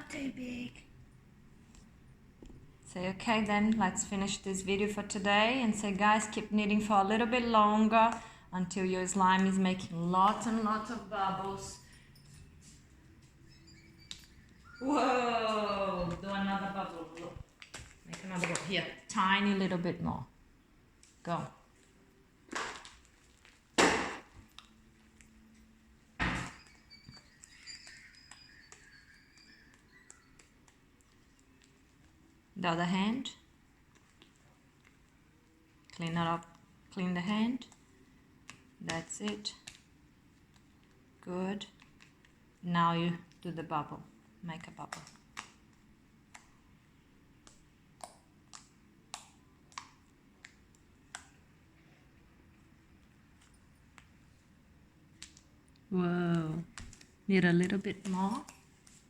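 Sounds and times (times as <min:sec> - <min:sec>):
slime squishing: 0:44.7 - 0:52.2.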